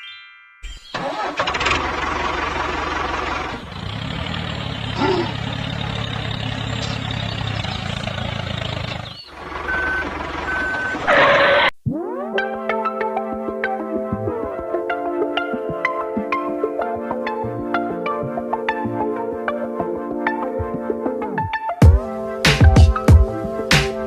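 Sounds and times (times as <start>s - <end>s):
truck engine running: 1.0s - 11.7s
reversing alarm beeping: 9.2s - 11.7s
synthesizer music: 11.8s - 24.0s.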